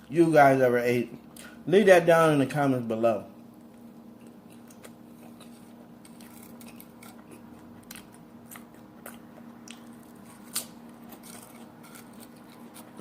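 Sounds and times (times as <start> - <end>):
steady low hum: 0.0 - 13.0
person chewing crisp food: 4.1 - 13.0.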